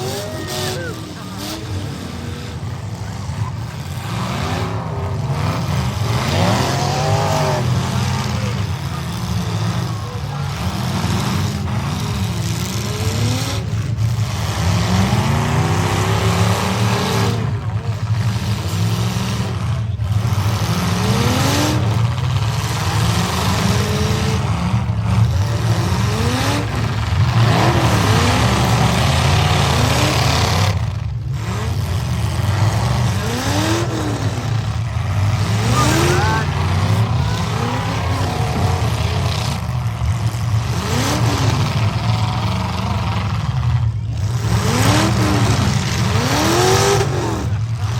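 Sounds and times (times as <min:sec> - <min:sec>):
truck engines revving: 0:00.0 - 0:47.9.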